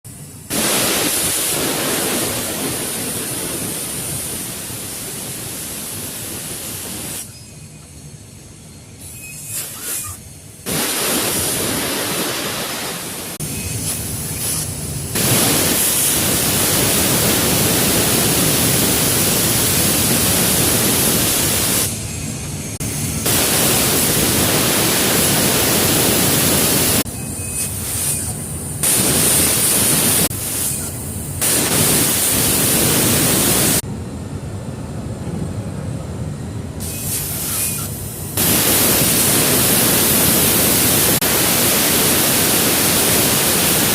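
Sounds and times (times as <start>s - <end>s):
plasma torch arc hiss: 0.1s - 7.4s, 9.0s - 33.8s, 36.8s - 43.9s.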